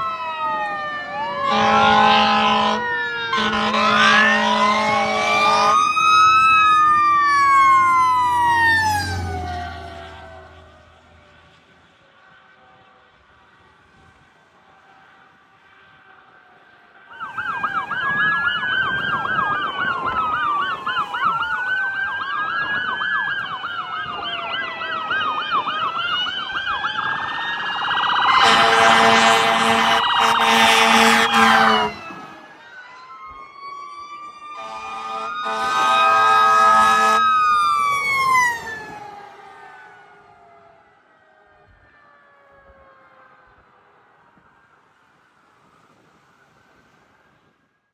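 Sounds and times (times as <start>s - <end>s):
sirens wailing and yelping: 0.0s - 11.7s, 17.1s - 45.0s
long horn blasts: 1.4s - 5.9s, 28.3s - 32.2s, 34.5s - 37.4s.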